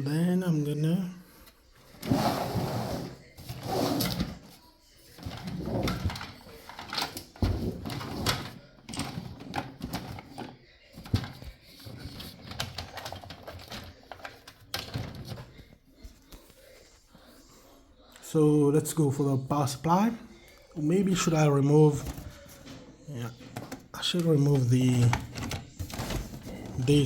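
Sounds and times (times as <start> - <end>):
computer case parts rattling: 5.2 - 15.6, 21.1 - 27.0.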